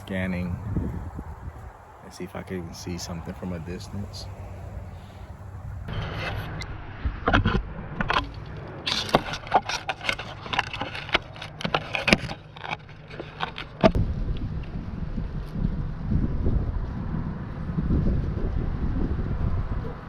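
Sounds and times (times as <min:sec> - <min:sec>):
wind rumbling on microphone: 0:00.0 - 0:20.0
handling clicks and rustles: 0:07.3 - 0:14.0.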